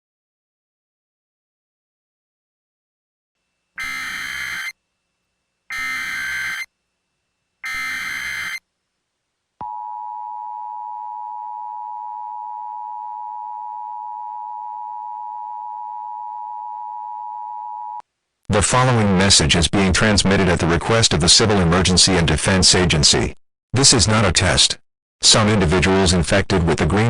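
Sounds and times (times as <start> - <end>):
harsh digital data bursts: 3.8 - 4.7, 5.7 - 6.7, 7.6 - 8.6
two-tone attention signal: 3.8 - 4.7, 5.7 - 6.7, 7.6 - 8.6.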